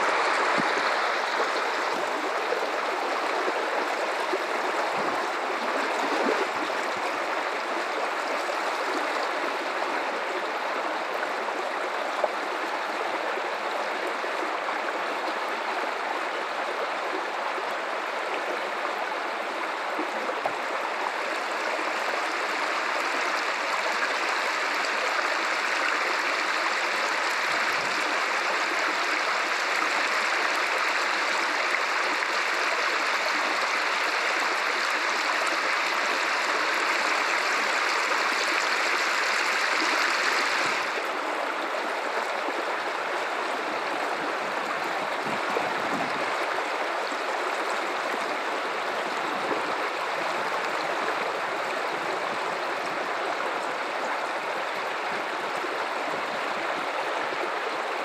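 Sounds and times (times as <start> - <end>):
river water running over rocks: 0.0 - 58.0.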